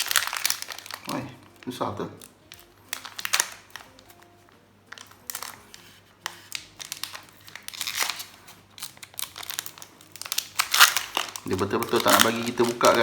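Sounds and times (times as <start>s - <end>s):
foil wrapper crinkling: 0.0s - 13.0s
soft background music: 0.0s - 13.0s.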